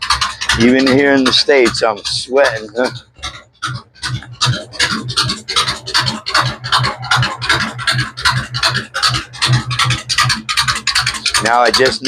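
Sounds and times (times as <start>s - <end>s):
scrubbing strokes on a surface: 0.5s - 2.9s.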